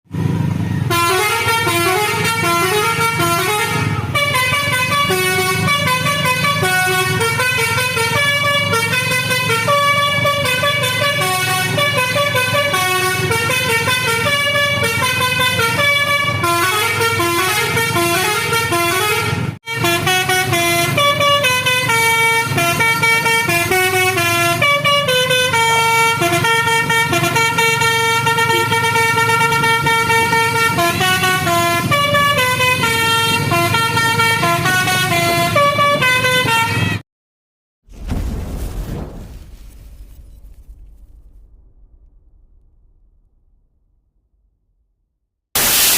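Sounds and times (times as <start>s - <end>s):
musical bus horn playing tune: 0.8s - 37.0s.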